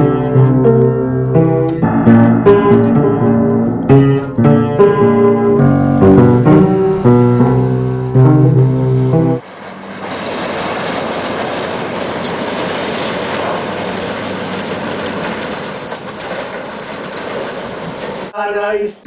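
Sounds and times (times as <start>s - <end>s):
piano music: 0.0s - 9.4s.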